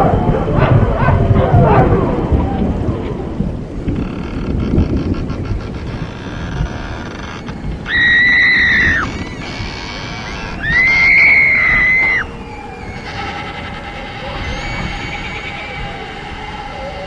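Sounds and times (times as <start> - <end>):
noisy rumbling background: 0.0 - 17.0
shrill shrieks: 4.2 - 17.0.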